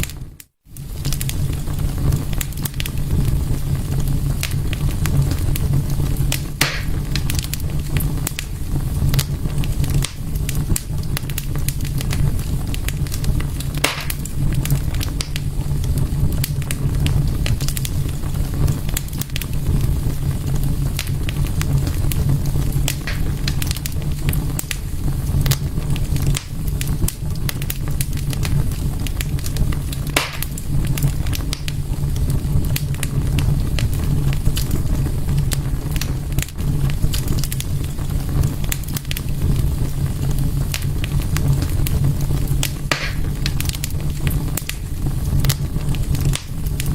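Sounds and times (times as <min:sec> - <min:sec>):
fire crackling: 0:00.0 - 0:46.9
loud fire pops: 0:00.0 - 0:46.9.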